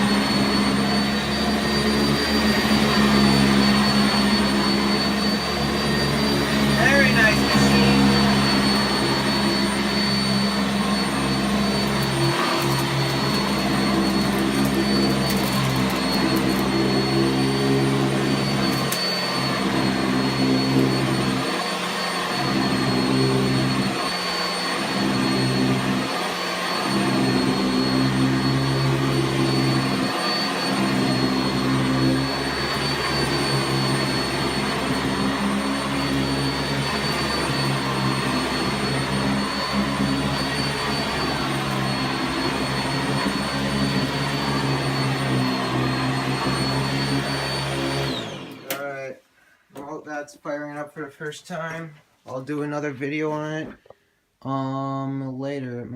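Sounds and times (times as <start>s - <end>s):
vacuum cleaner running: 0.0s - 49.1s.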